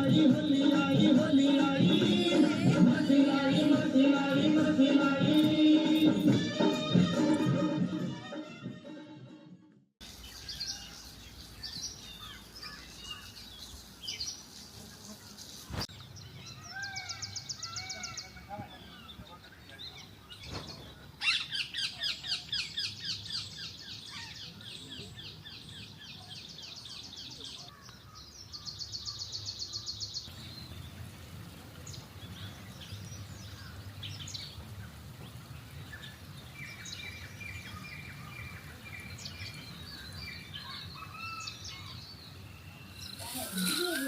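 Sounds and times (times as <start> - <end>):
fast even bird trill: 42.8 - 44.0.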